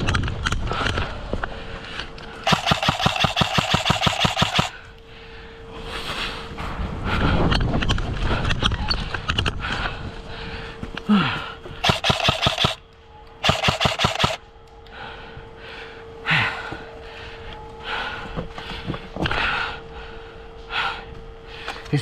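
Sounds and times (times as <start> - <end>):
airsoft gun full-auto fire: 2.4 - 4.7, 11.8 - 12.8, 13.4 - 14.4
breathy exhalations: 9.5 - 11.9
faint steady tone: 12.3 - 21.8.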